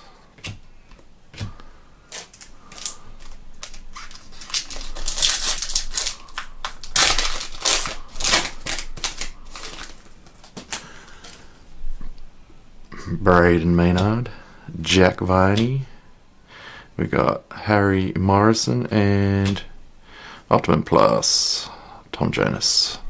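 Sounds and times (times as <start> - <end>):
wrapper tearing and crinkling: 2.1 - 11.4.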